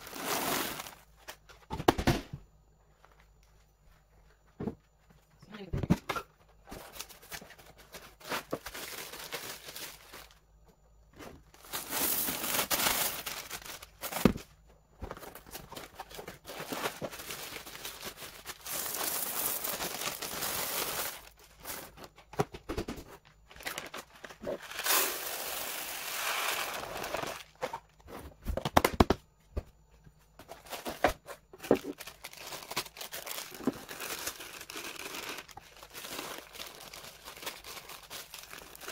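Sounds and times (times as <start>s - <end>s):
plastic bags crinkling: 0.0s - 1.4s, 6.8s - 10.4s, 11.5s - 14.4s, 15.2s - 22.0s, 23.5s - 27.9s, 30.6s - 38.9s.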